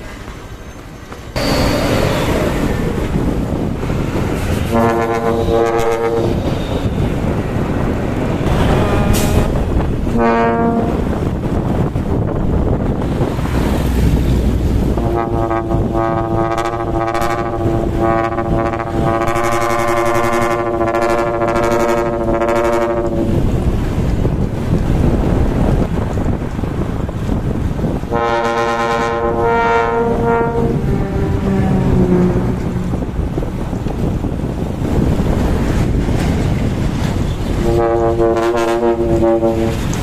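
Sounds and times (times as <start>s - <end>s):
diesel truck engine rumbling: 0.0s - 40.0s
trumpet air horn blasts: 4.6s - 6.9s, 8.5s - 11.2s, 14.8s - 23.4s, 28.1s - 33.5s, 37.6s - 39.9s.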